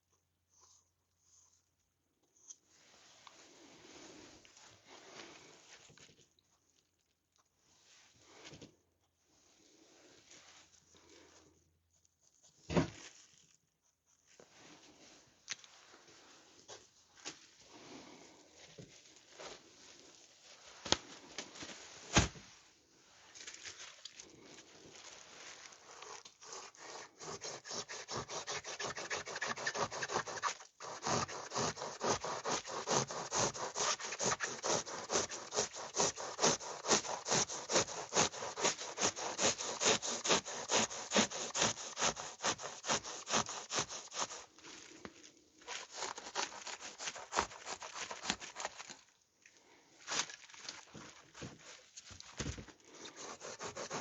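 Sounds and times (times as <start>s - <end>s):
rasping strokes on foam: 25.3s - 44.9s, 45.6s - 48.9s, 52.9s - 54.0s.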